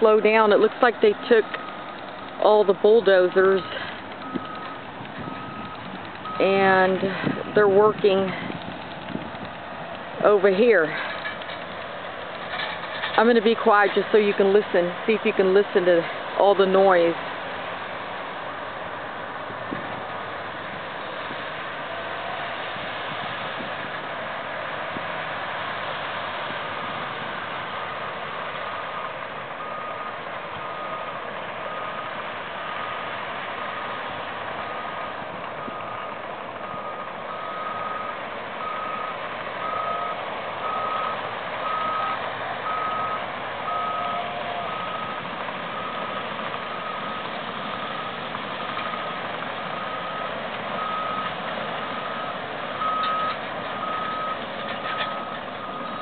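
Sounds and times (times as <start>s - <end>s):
bulldozer and truck engines droning: 0.0s - 56.0s
backup alarm beeping: 2.4s - 8.1s, 52.2s - 54.4s.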